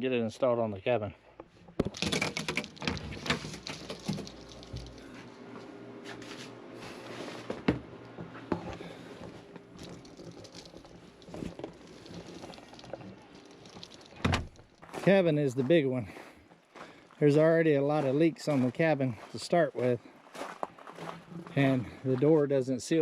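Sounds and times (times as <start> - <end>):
rustling of materials: 1.5 - 7.6, 8.3 - 15.6.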